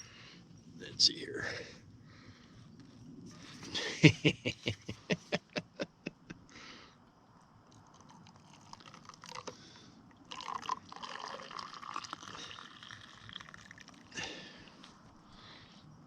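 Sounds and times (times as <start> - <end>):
coffee pouring into a cup: 7.7 - 9.6, 10.2 - 14.3.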